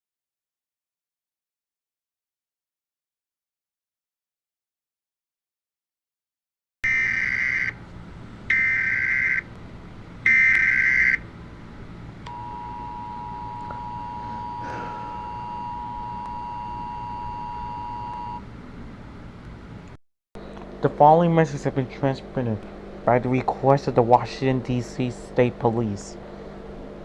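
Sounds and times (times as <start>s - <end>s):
buzzing data tone blasts: 6.8s - 7.8s, 8.5s - 9.5s, 10.2s - 11.4s, 12.3s - 18.5s
two-tone attention beep: 12.3s - 18.4s.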